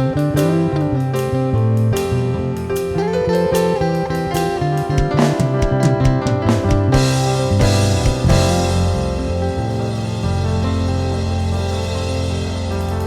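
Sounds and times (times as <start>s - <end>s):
guitar: 0.0s - 13.0s
drum strokes: 3.0s - 11.7s
live band playing: 3.6s - 13.0s.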